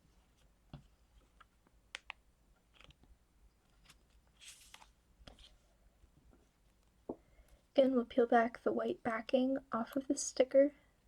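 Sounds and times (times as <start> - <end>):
soft paper rustle: 0.0 - 7.0.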